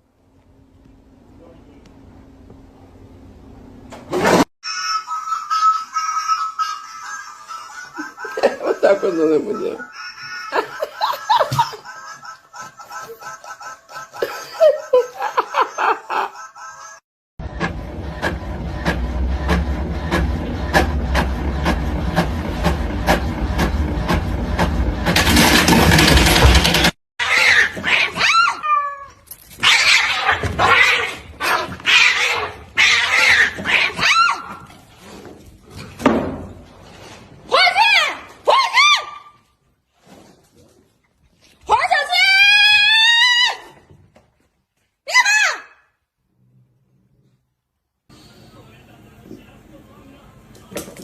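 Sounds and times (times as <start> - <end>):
animal wailing cries: 4.6 - 12.0, 27.2 - 34.7
laughter: 7.8 - 9.2, 10.5 - 12.3, 14.1 - 16.5.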